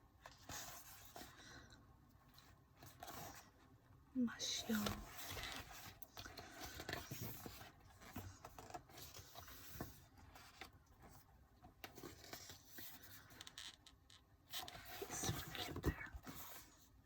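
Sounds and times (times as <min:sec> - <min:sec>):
photo book pages turning: 0:04.6 - 0:16.8.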